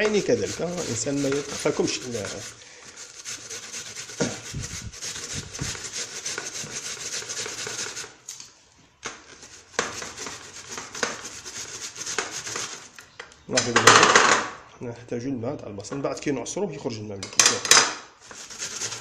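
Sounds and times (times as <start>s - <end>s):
onion scraping on a grater: 0.0s - 8.2s, 9.4s - 12.9s, 18.2s - 19.0s.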